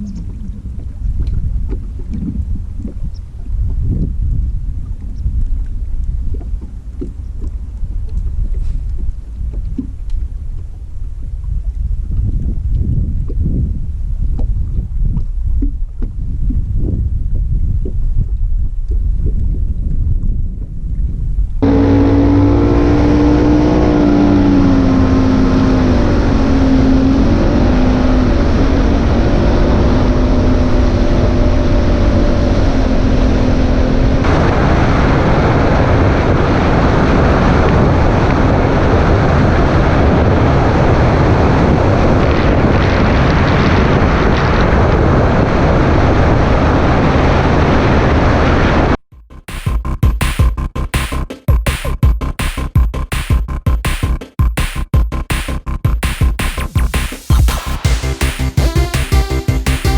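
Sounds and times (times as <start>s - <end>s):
rush of wind and water: 0.0s - 49.0s
outboard motor running: 21.6s - 35.2s.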